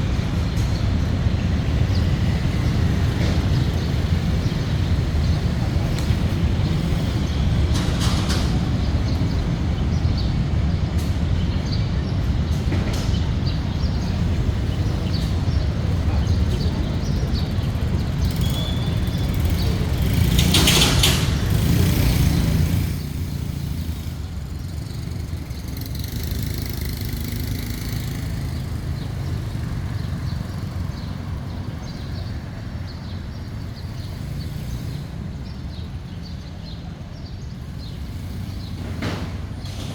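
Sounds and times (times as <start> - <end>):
low rumble of traffic: 0.0 - 39.9
vehicle passing by: 13.4 - 35.7.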